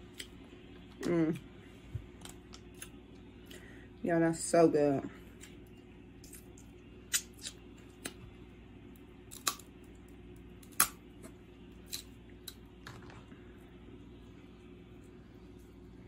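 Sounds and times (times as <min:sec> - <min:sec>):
crab shells cracking: 0:09.3 - 0:09.9, 0:10.5 - 0:11.0.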